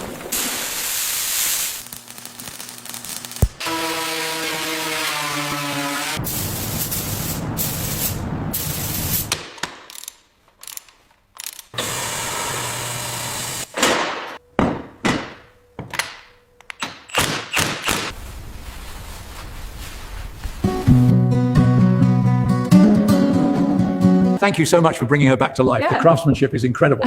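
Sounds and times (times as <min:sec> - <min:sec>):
steady hiss: 0:00.2 - 0:03.6.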